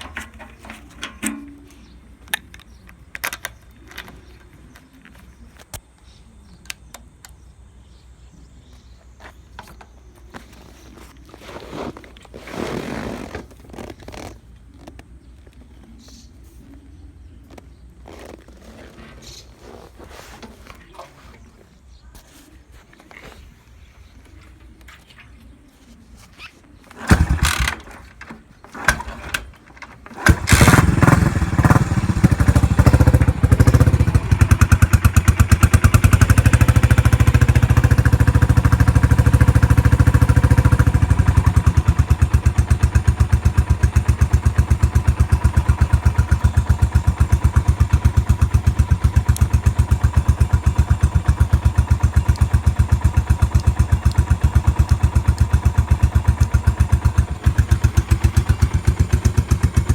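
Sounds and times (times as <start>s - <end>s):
engine sputtering: 0.0s - 4.4s, 26.9s - 59.9s
motorcycle engine idling: 0.0s - 5.4s, 26.9s - 59.9s.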